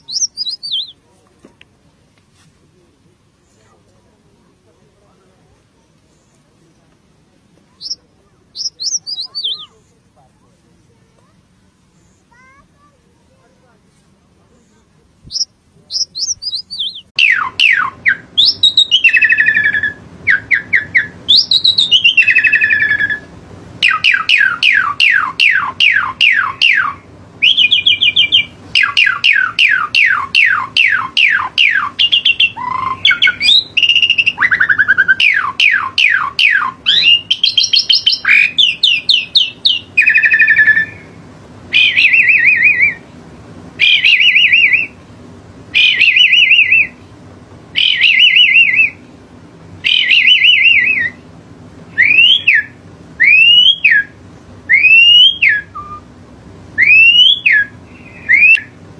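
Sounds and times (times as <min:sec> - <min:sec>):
songbird singing whistles and trills: 0:00.0 - 0:01.0, 0:07.8 - 0:09.9, 0:15.2 - 0:43.0, 0:43.8 - 0:45.0, 0:45.7 - 0:47.0, 0:47.8 - 0:49.0, 0:49.8 - 0:51.3, 0:51.9 - 0:56.1, 0:56.8 - 0:58.8.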